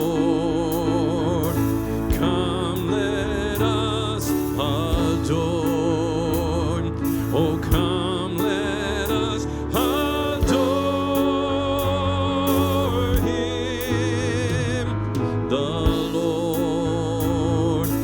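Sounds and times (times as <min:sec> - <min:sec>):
worship band playing: 0:00.0 - 0:18.0
drum hits: 0:10.0 - 0:11.3.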